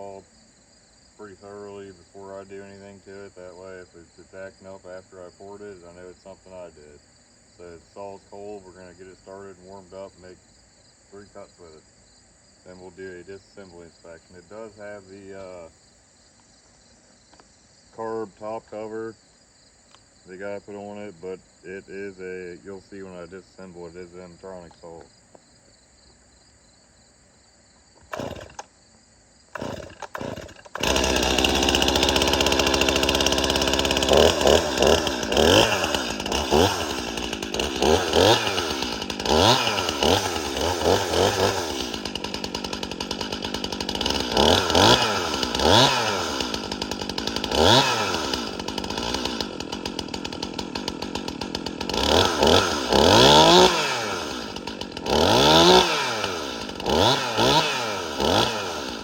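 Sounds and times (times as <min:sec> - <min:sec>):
chainsaw starting and revving: 0:01.2 - 0:07.0, 0:07.6 - 0:10.4, 0:12.7 - 0:15.7, 0:28.0 - 0:28.7, 0:29.5 - 0:59.0.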